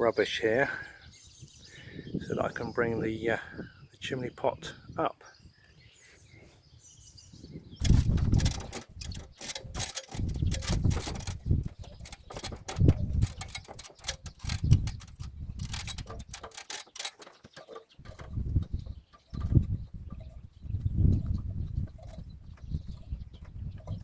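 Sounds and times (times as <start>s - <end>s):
rubble knocking and clattering: 7.8s - 20.3s.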